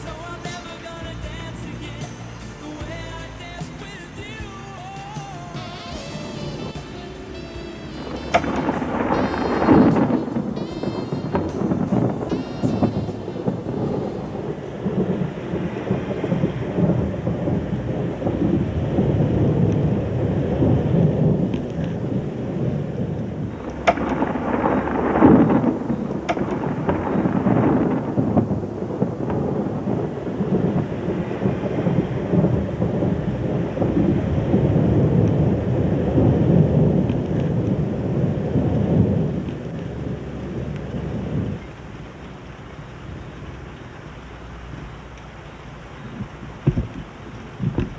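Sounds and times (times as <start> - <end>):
steady rain: 0.0 - 47.9
rolling thunder: 6.1 - 45.1
sharp thunderclap: 8.0 - 42.2.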